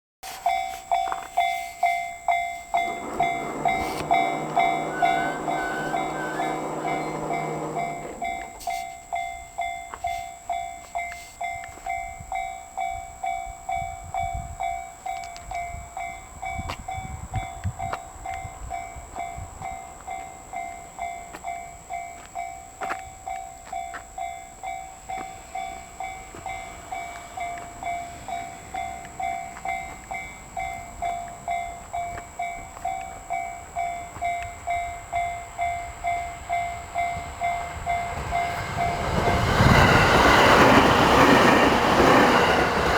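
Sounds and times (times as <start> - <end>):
level crossing alarm bell: 0.2 - 42.9.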